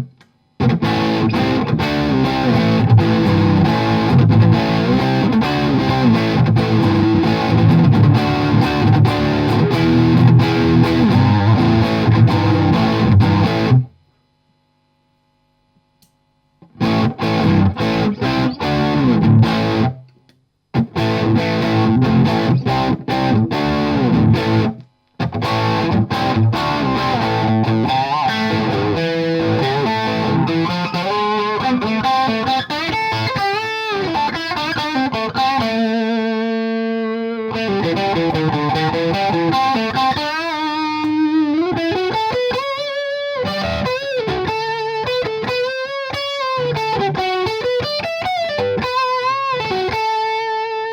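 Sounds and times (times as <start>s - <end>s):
distorted electric guitar: 0.0s - 14.2s, 16.6s - 50.9s.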